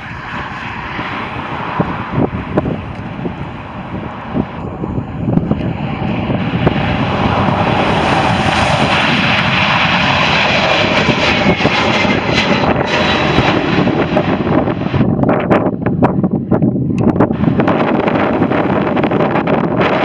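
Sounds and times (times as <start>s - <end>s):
jet engines roaring at takeoff: 0.0s - 20.0s.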